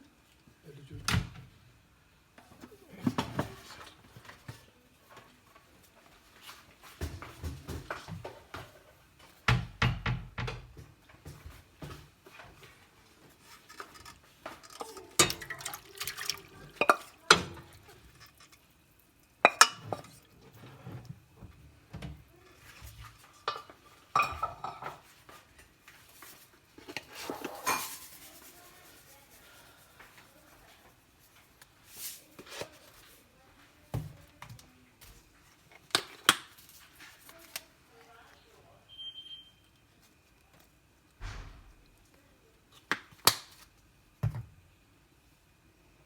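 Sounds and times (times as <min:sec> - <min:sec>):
dishes and pots clattering: 0:13.4 - 0:18.6, 0:19.4 - 0:21.1, 0:22.0 - 0:25.1, 0:26.8 - 0:28.2.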